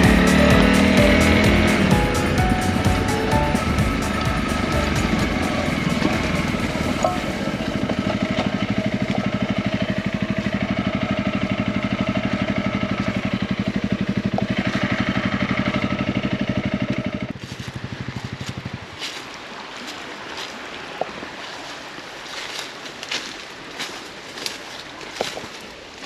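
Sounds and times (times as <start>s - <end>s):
motorcycle engine puttering: 0.0s - 19.1s.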